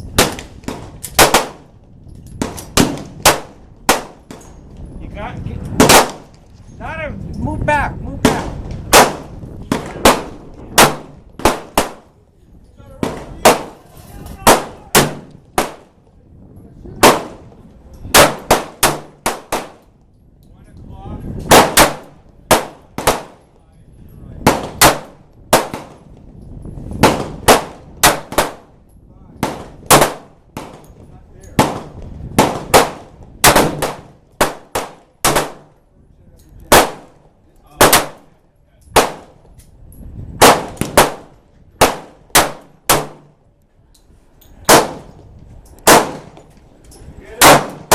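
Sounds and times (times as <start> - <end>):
gunshots: 0.2 - 1.7, 2.4 - 4.4, 5.8 - 6.3, 8.2 - 12.1, 13.0 - 13.8, 14.4 - 16.0, 17.0 - 17.5, 18.1 - 19.8, 21.5 - 23.4, 24.4 - 26.0, 27.0 - 28.7, 29.4 - 30.9, 31.6 - 35.7, 36.7 - 38.3, 39.0 - 39.4, 40.4 - 43.4, 44.7 - 45.1, 45.8 - 46.5, 47.4 - 47.9.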